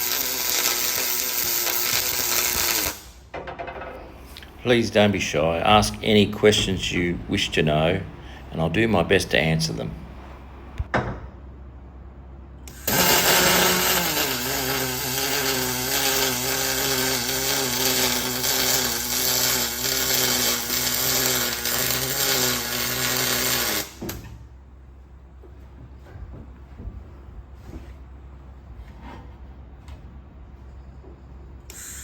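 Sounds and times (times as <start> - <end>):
welding arc hissing and buzzing: 0.0 - 3.3, 12.7 - 24.3, 31.7 - 32.0.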